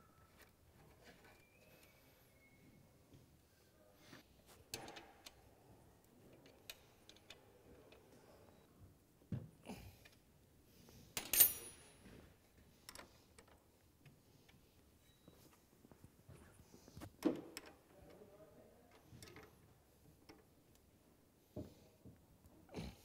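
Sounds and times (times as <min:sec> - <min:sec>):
metal parts and tools clicking: 0:11.2 - 0:12.0
sharp metallic clink: 0:11.2 - 0:12.0.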